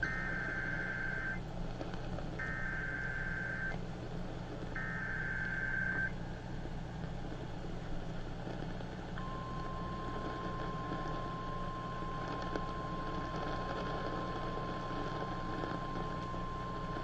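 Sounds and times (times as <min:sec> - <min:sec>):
shrill warbling data tones: 0:00.0 - 0:01.4, 0:02.4 - 0:03.8, 0:04.8 - 0:06.1
low radio hum: 0:00.0 - 0:17.0.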